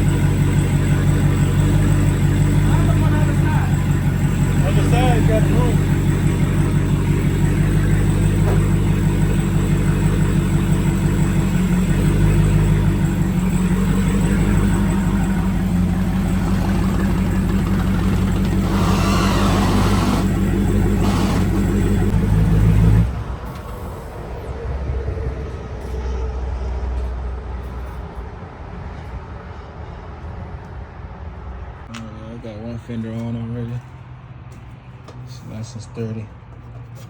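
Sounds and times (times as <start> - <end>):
car engine idling: 0.0 - 24.6.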